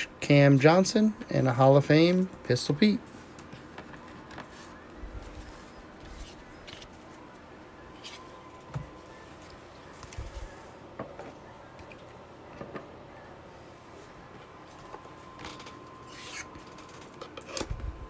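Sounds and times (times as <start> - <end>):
faint steady hum: 0.0 - 18.0
cardboard packaging rustling: 3.2 - 10.6.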